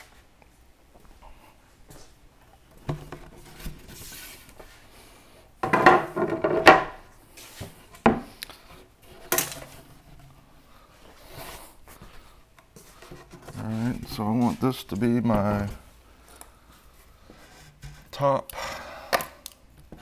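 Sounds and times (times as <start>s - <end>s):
wooden knocks: 5.6s - 7.0s.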